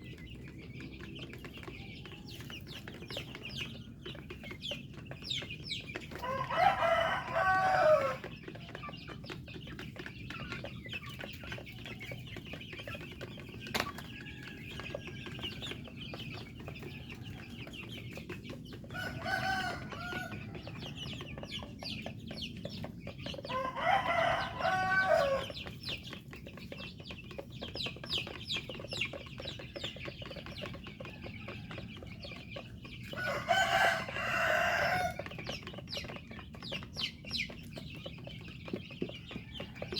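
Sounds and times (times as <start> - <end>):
chickens clucking: 0.0 - 39.9
rooster crowing: 6.1 - 8.3, 18.9 - 21.2, 23.4 - 25.6, 33.1 - 35.3.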